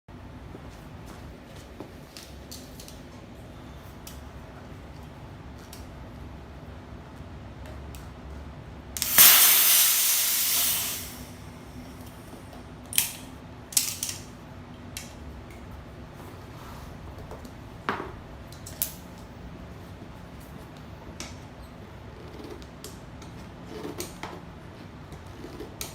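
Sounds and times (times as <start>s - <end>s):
air hissing out: 9.0s - 11.8s.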